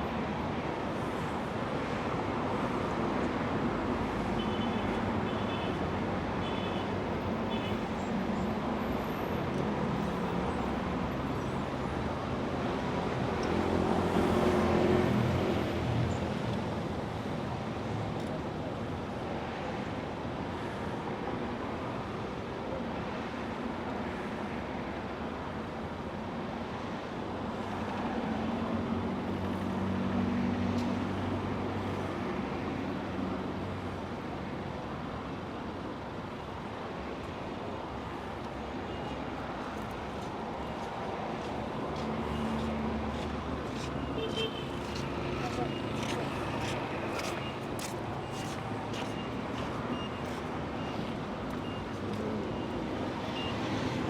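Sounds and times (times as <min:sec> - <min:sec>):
city street traffic: 0:00.0 - 0:54.0
vehicles passing close: 0:38.0 - 0:54.0.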